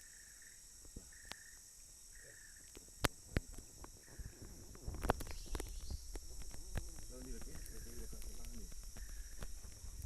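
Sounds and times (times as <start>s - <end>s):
high drone of insects: 0.0s - 10.0s
rustling: 2.7s - 10.0s.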